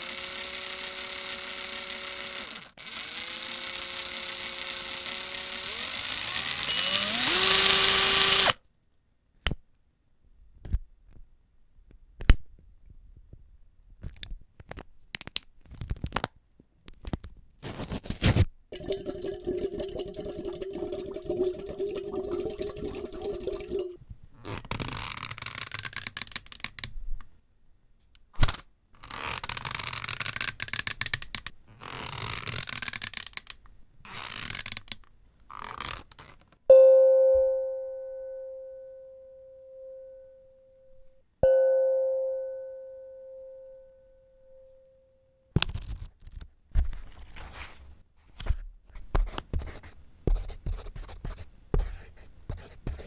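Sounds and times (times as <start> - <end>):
sharp ringing strikes: 36.7 - 40.3, 41.4 - 43.9
scraping and rustling: 45.8 - 48.6.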